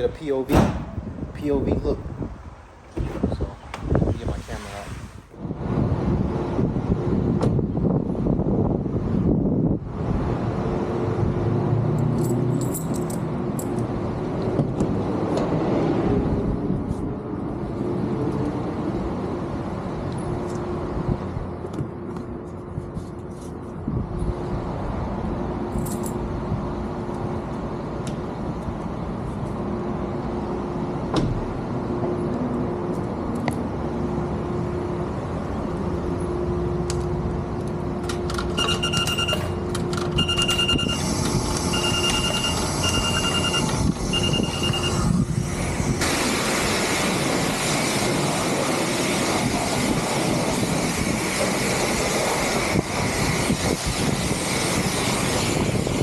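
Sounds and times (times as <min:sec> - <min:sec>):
washing equipment rushing hiss: 0:03.0 - 0:05.4, 0:44.9 - 0:56.0
electronic beeper short beeps: 0:38.6 - 0:39.6, 0:40.2 - 0:41.0, 0:41.7 - 0:45.0.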